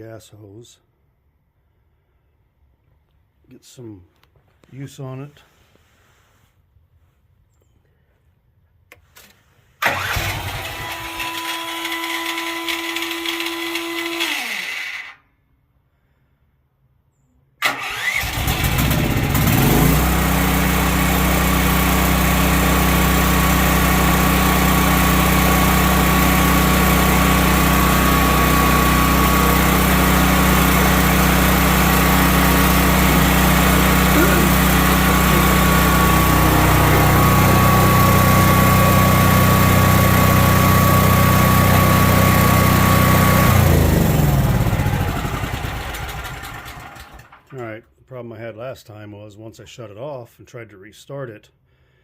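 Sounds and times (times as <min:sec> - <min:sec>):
generator engine starting and running: 0:08.9 - 0:15.2, 0:17.6 - 0:47.6.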